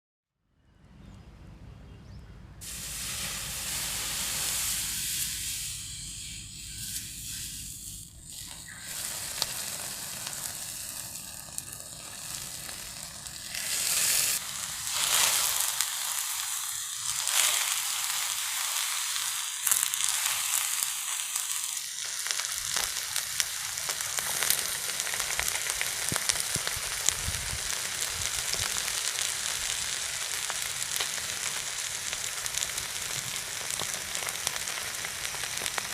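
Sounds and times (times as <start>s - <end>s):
fish sizzling in hot oil: 2.6s - 35.9s
crackling pops of oil: 22.0s - 27.2s, 28.0s - 35.9s.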